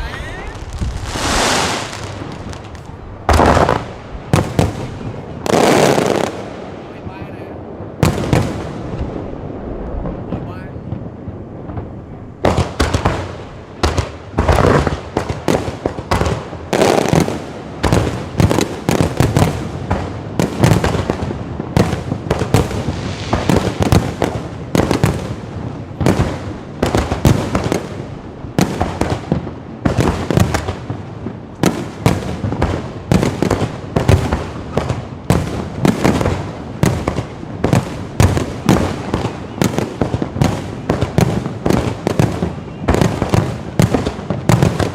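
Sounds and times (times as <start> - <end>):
fireworks bangs and crackles: 0.0 - 44.9.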